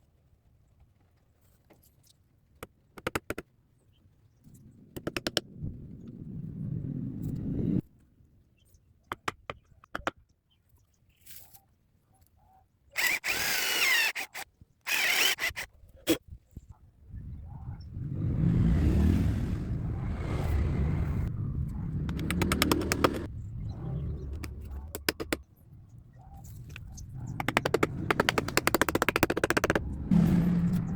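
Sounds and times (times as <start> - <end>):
power tool motor running: 13.0 - 15.7, 27.4 - 30.7
tool squealing into wood: 13.0 - 15.7, 27.4 - 29.8
sharp taps and knocks on wood: 22.1 - 23.3, 27.4 - 29.8.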